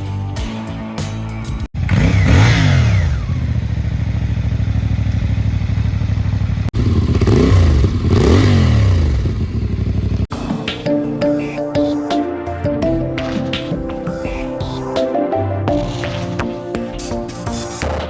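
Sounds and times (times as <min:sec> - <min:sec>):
background music: 0:00.0 - 0:01.7, 0:10.3 - 0:18.0
motorcycle engine revving: 0:01.7 - 0:10.3.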